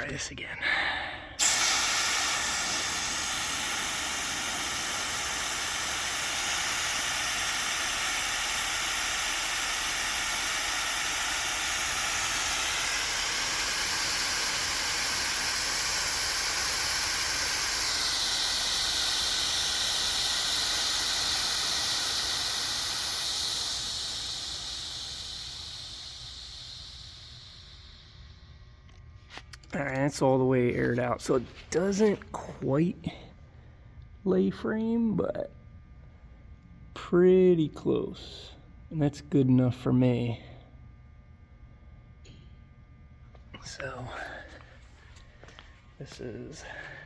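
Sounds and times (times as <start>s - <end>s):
air hissing from suspension bags: 1.4s - 28.6s.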